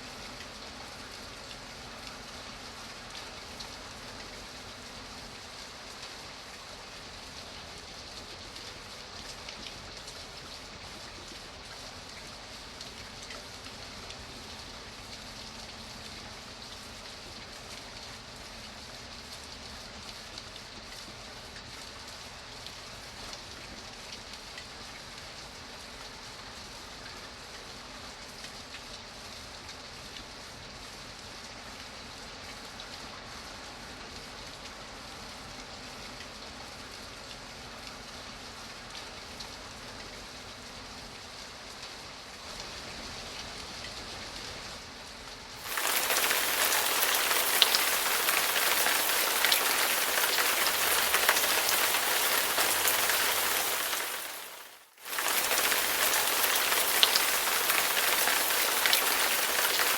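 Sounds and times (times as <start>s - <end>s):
rain hiss: 0.0s - 59.9s
raindrops ticking: 45.6s - 59.9s.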